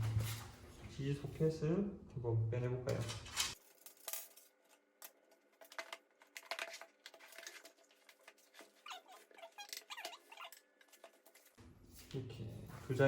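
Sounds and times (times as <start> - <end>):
parts squeaking: 7.1 - 11.6.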